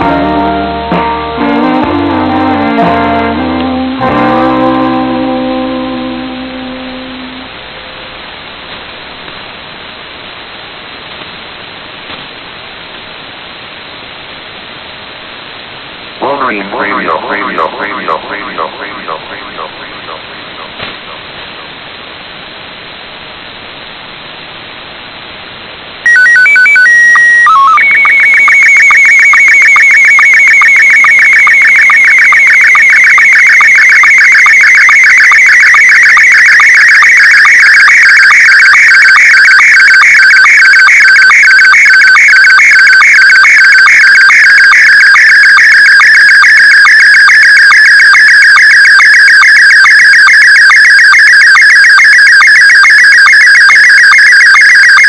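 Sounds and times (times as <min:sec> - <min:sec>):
radio receiver hiss: 0:06.8 - 0:26.0
steady beeps: 0:16.2 - 0:21.3, 0:26.1 - 0:36.3
pulsing warble: 0:16.2 - 0:21.6.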